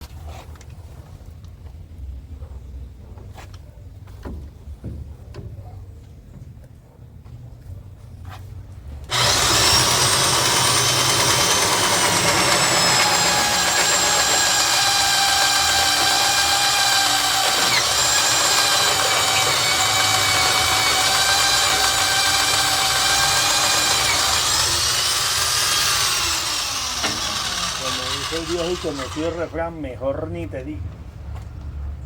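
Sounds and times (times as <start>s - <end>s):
drill motor whining: 9.1s - 29.6s.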